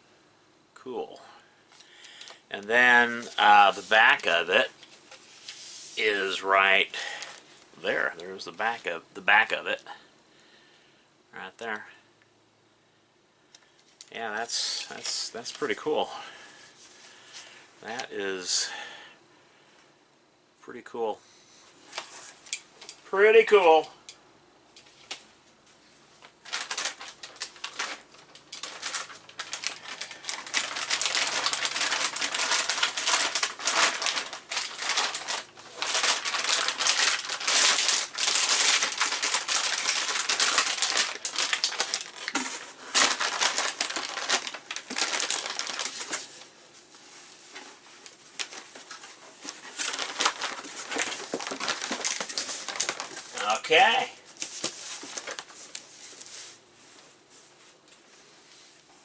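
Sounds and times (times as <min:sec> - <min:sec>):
plastic packaging crinkling: 0:01.7 - 0:07.5, 0:26.2 - 0:46.6, 0:47.5 - 0:56.6.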